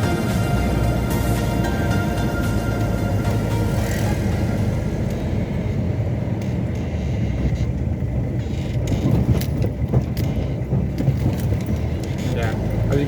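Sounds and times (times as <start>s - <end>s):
car engine and tyres rumbling: 0.0s - 13.0s
sharp knocks and rattles: 7.6s - 13.0s.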